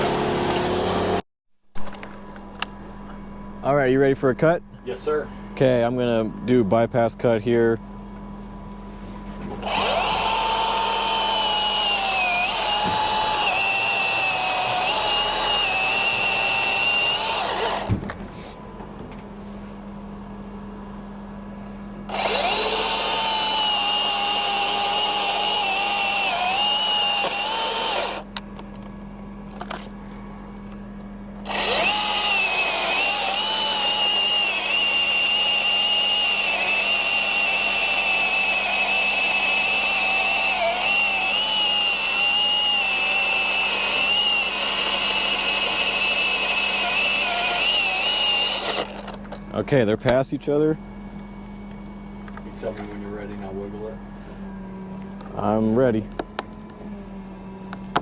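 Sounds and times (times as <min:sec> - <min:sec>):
steady low hum: 0:01.8 - 0:38.6, 0:47.3 - 0:58.0
chainsaw cutting through wood: 0:09.6 - 0:17.9, 0:22.1 - 0:28.3, 0:31.4 - 0:49.2.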